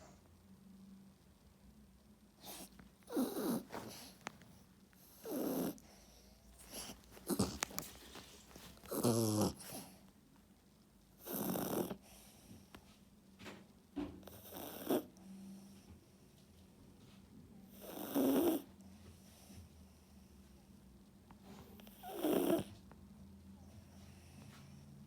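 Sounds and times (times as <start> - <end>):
loud snoring: 3.1 - 4.1, 5.1 - 5.8, 6.7 - 7.9, 8.8 - 9.8, 11.2 - 12.0, 14.2 - 15.0, 17.8 - 18.6, 21.9 - 22.7.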